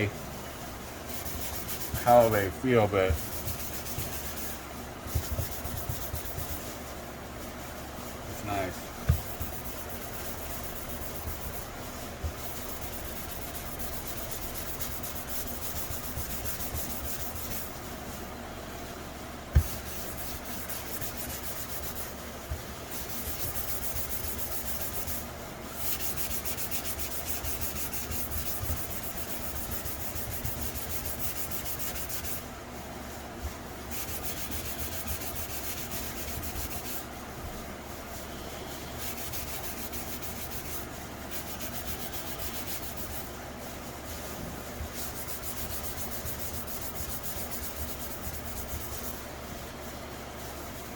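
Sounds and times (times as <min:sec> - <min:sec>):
abrasive pad scrubbing: 0:01.1 - 0:06.8, 0:08.4 - 0:17.9, 0:19.6 - 0:32.4, 0:33.9 - 0:37.1, 0:38.0 - 0:44.0.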